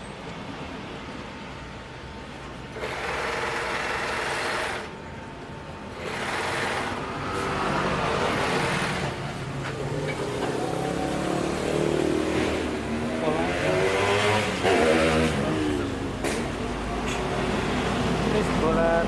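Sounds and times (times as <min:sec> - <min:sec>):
sewing machine stitching: 0:06.0 - 0:07.0.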